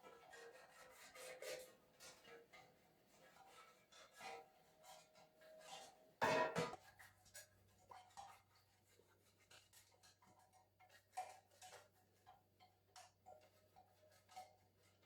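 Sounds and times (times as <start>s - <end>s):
faint light clicks and taps: 9.3s - 15.0s.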